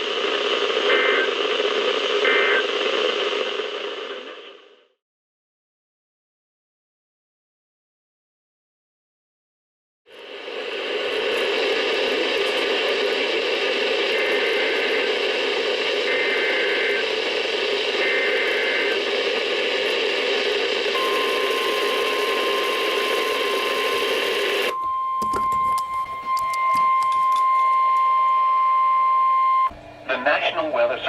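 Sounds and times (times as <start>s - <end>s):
radio static: 0.0s - 4.8s, 10.1s - 25.5s
digital header warble: 10.2s - 27.5s
steady warning alert tone: 10.3s - 28.2s.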